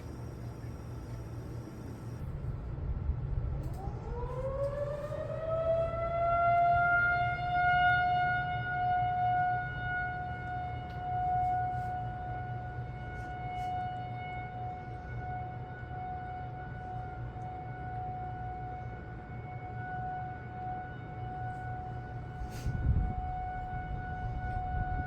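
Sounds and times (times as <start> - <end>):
warning siren winding up: 0.0 - 2.2, 3.6 - 14.6.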